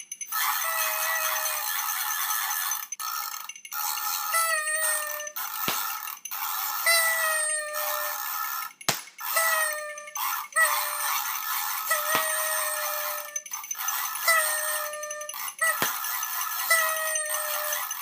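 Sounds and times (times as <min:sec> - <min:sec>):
paper party horns blowing: 0:00.3 - 0:02.9, 0:04.1 - 0:18.0
sharp clicks: 0:05.1 - 0:06.6.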